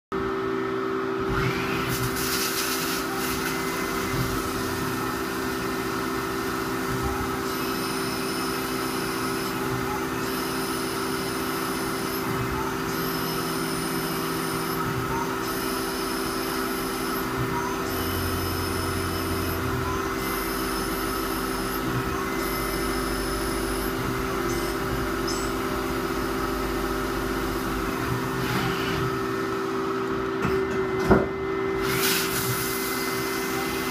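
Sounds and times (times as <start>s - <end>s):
lathe spindle hum: 0.3s - 30.4s
high hiss of threading tool: 1.8s - 4.0s, 31.8s - 33.7s.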